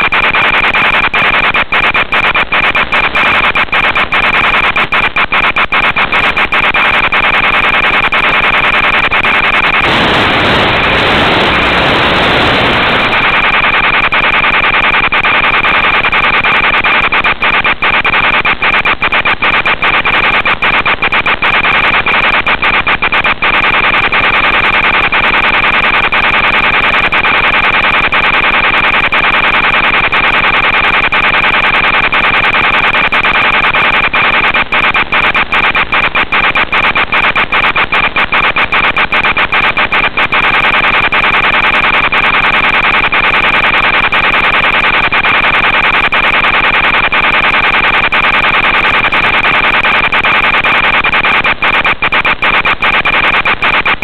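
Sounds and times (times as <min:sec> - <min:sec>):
high whine: 0:00.0 - 0:28.9
crackling clicks: 0:00.0 - 0:54.0
static hiss and buzz: 0:00.0 - 0:54.0.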